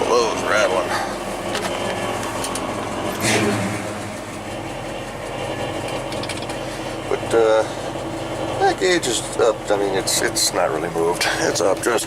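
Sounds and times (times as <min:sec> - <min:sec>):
truck engine idling: 0:00.0 - 0:12.0
rattle underneath: 0:01.5 - 0:08.6.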